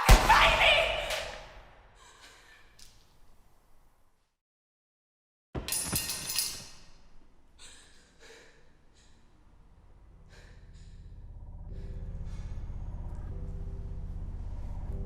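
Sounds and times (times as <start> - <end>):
person gasping breaths: 7.6 - 9.4
low film score music: 9.3 - 15.0.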